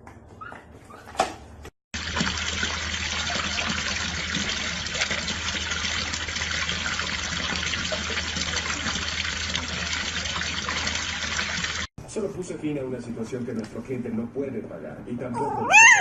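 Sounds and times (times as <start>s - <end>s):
running water: 1.9s - 11.9s.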